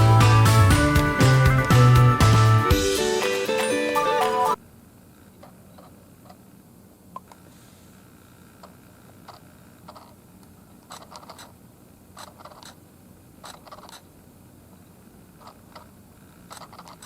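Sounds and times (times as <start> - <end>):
camera clicks and scraping: 8.6 - 10.2, 10.8 - 11.6, 12.2 - 12.8, 13.4 - 14.1, 15.4 - 17.0.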